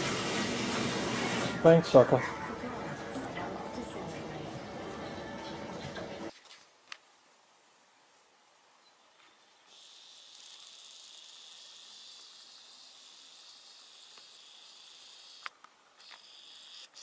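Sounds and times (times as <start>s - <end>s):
steady high hiss: 6.3s - 17.0s.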